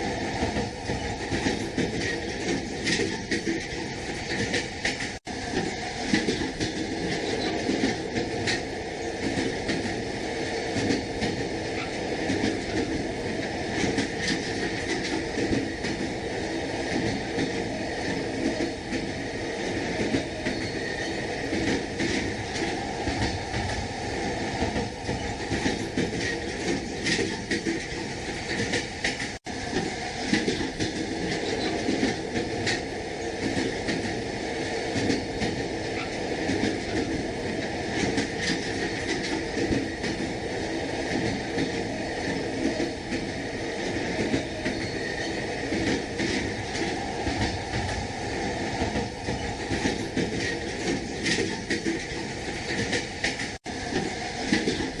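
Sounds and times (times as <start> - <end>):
train wheels clattering over rail joints: 0.0 - 10.0, 10.7 - 16.2, 24.6 - 34.2, 34.9 - 40.4, 48.7 - 55.0
train running rumble: 0.0 - 55.0.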